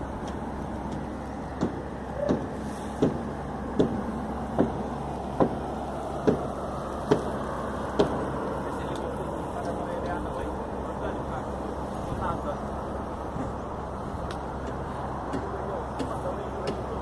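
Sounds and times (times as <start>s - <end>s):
steady low rumble: 0.0s - 17.0s.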